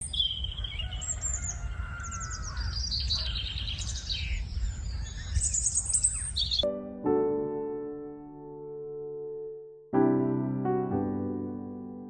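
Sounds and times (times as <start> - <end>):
small birds chirping: 0.0 - 6.7.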